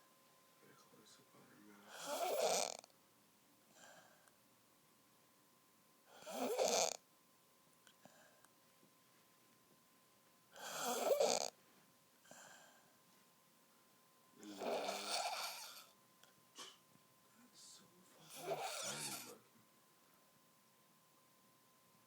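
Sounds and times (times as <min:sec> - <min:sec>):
woman snoring loudly: 0:01.9 - 0:02.9, 0:06.1 - 0:07.0, 0:10.6 - 0:11.5, 0:14.5 - 0:15.9, 0:18.3 - 0:19.3
faint breath: 0:03.7 - 0:04.4, 0:08.0 - 0:08.6, 0:11.7 - 0:13.0.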